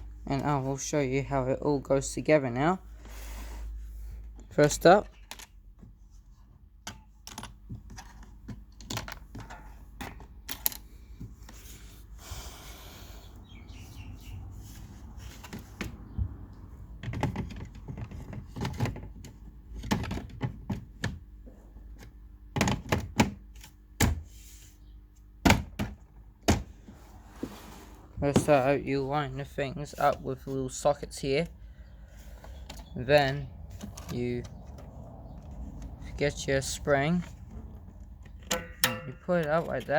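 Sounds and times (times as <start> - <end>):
clicks and knocks of parts handled: 4.3 - 5.9, 6.5 - 11.6, 32.3 - 36.2, 37.2 - 39.9.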